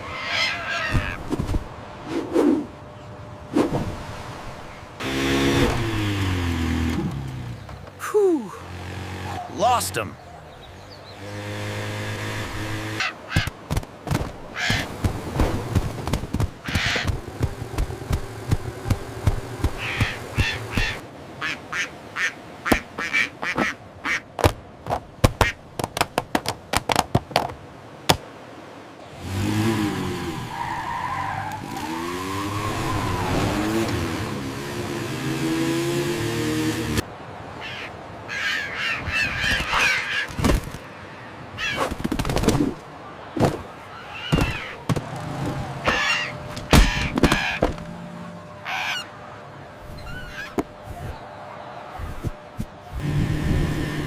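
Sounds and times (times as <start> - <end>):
seagulls squawking: 0.0 - 1.3, 14.5 - 15.0, 16.6 - 17.2, 19.7 - 24.2, 37.5 - 40.5, 41.6 - 41.9, 43.9 - 44.9, 45.6 - 47.8, 48.5 - 49.2, 49.9 - 51.3.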